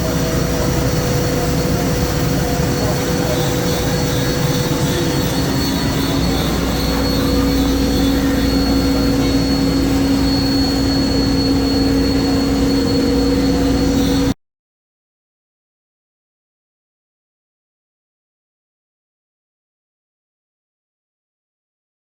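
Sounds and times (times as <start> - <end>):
lathe humming and whining: 0.0 - 14.4.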